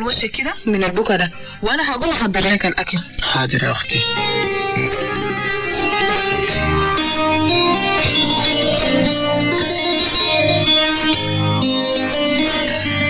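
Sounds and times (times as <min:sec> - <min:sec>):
plucked guitar music: 0:03.9 - 0:13.0.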